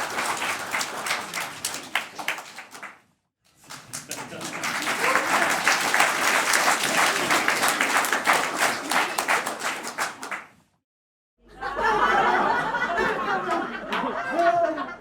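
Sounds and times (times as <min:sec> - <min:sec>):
audience applauding: 0:00.0 - 0:10.6
audience shouting: 0:04.3 - 0:09.8.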